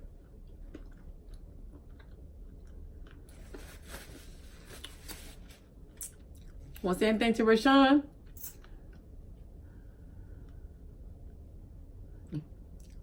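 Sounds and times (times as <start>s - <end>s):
faint chewing: 0.0s - 3.8s.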